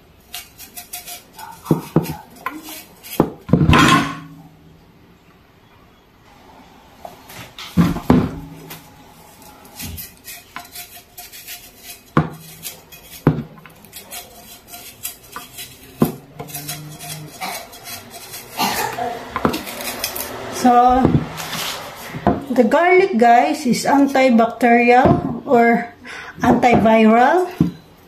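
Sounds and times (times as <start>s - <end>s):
utensils and dishes clinking: 12.5s - 20.4s.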